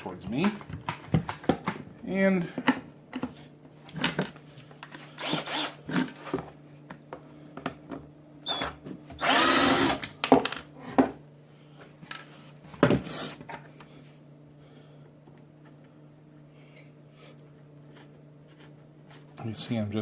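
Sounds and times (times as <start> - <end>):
cordless drill drilling plastic: 5.2 - 6.1, 9.2 - 10.1
scraping and handling noises: 17.6 - 19.8.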